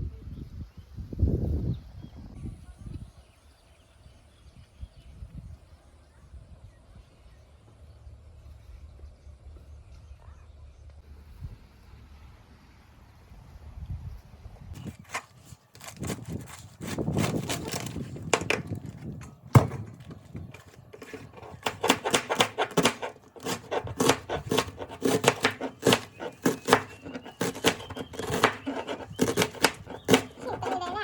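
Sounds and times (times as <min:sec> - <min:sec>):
knocks on wood: 0:16.0 - 0:30.9.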